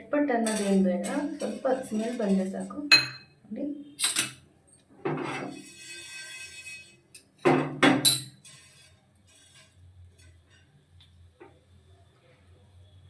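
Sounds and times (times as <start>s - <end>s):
metal utensils clanking on steel pan: 0.4s - 3.2s, 4.0s - 4.4s, 5.1s - 9.6s
utensil scraping and clinking: 0.4s - 3.2s, 4.0s - 4.4s, 5.1s - 10.7s.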